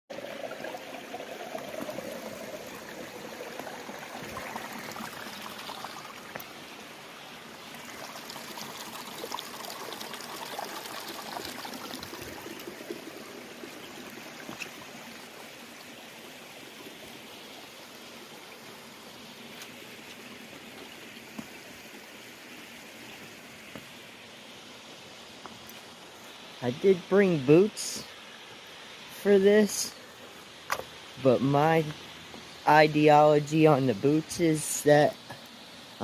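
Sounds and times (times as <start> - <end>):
creek water flowing: 0.1 - 36.0
small water splashes: 7.6 - 15.8.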